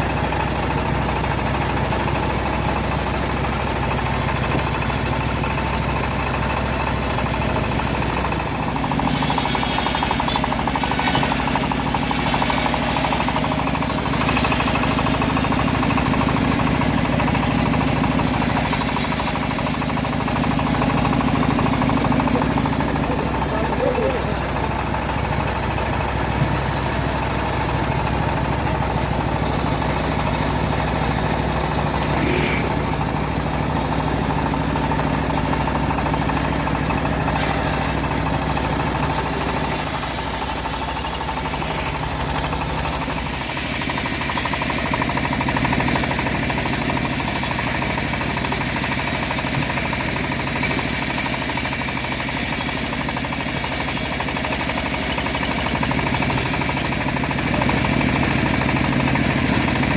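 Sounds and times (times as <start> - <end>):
engine-driven bandsaw running: 0.0 - 59.9
harsh high hiss of blade: 8.9 - 15.2.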